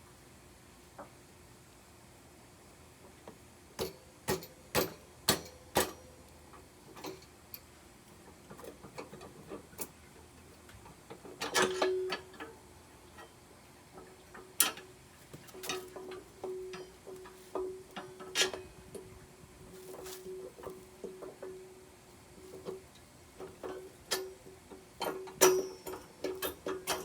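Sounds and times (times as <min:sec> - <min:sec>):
metal tools knocking and clinking: 0:25.0 - 0:27.0.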